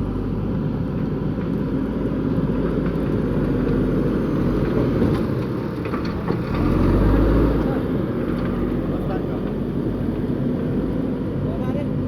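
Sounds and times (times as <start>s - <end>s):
diesel engine running: 0.0s - 12.0s.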